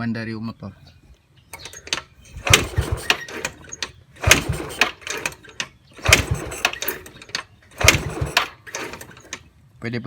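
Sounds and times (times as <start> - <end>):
scooter engine kick-started: 1.5 - 9.5.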